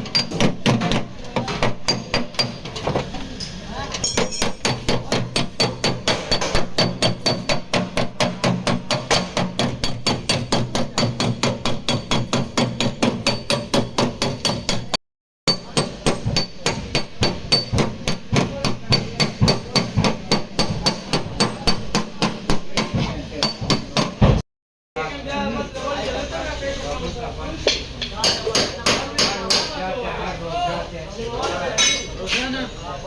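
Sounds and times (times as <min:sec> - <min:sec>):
hammer on sheet metal: 0:00.0 - 0:02.7, 0:04.0 - 0:24.4, 0:27.7 - 0:29.8.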